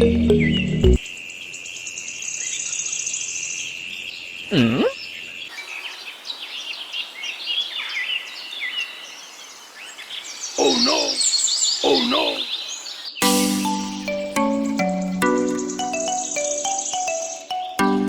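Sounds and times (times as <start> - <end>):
background music: 0.0 - 1.0, 13.2 - 18.0
insect drone: 5.5 - 13.2
bird chirps: 5.5 - 17.8
swooping bird call: 10.0 - 13.1.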